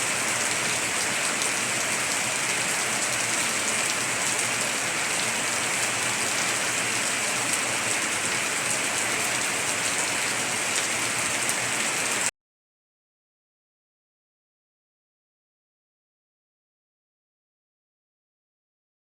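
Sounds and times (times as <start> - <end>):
heavy rain on tiled roof: 0.0 - 12.3.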